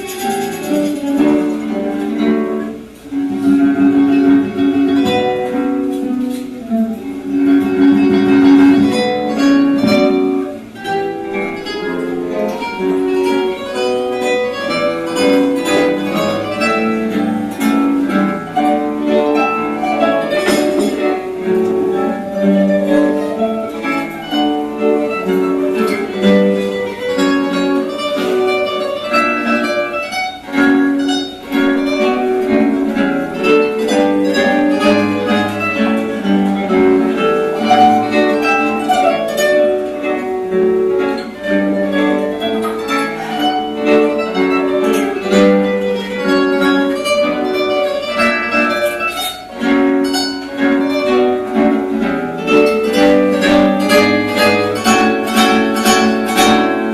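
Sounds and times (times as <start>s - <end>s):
guitar ensemble playing: 0.0s - 56.9s.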